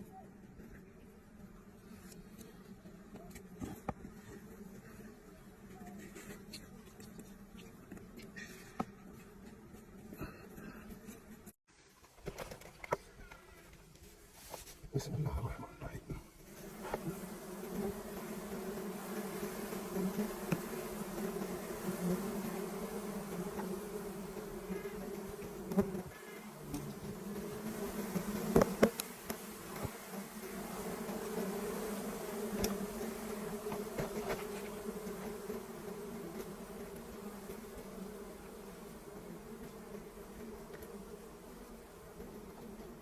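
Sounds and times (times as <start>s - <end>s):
bees buzzing: 16.4s - 43.0s.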